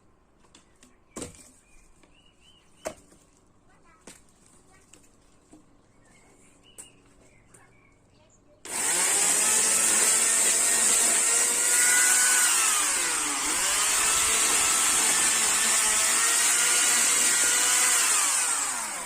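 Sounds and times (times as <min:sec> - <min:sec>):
chainsaw cutting wood: 0:08.7 - 0:19.0.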